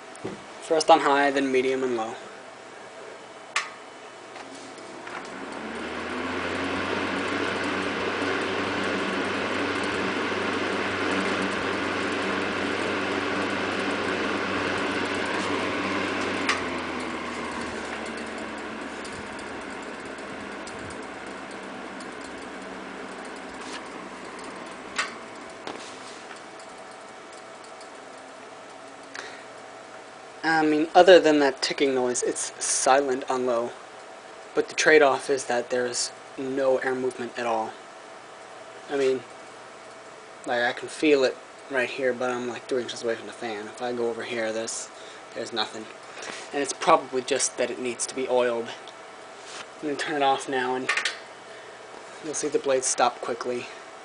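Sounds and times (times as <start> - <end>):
box fan motor humming: 0.0 - 54.0
fan switch click: 3.5 - 3.8.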